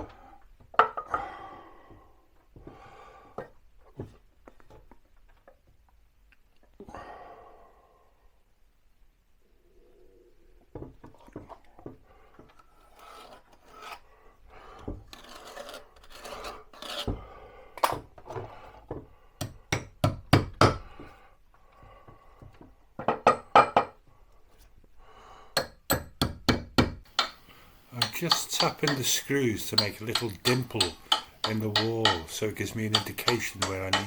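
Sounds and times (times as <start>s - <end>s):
hammer knocking on screws: 17.8s - 21.1s, 25.6s - 34.0s
wood rubbing and handling: 27.1s - 34.0s.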